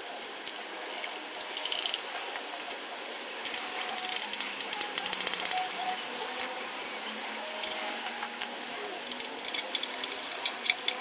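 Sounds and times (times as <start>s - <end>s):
hand tools clicking and rattling: 1.3s - 2.1s, 3.4s - 7.9s, 8.7s - 11.0s.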